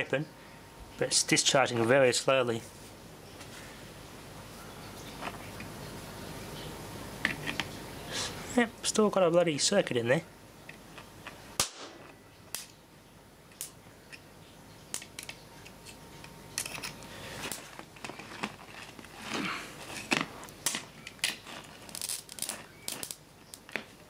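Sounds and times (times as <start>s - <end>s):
electrical arcing snaps: 11.6s - 12.7s, 20.6s - 23.7s.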